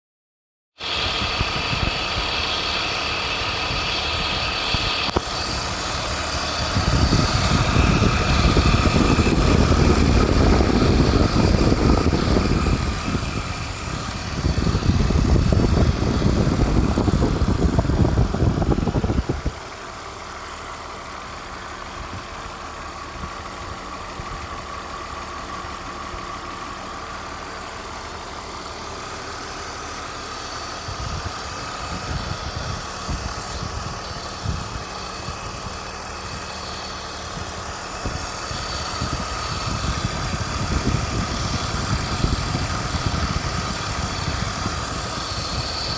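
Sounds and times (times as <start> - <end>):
car engine running: 0.8 - 45.9.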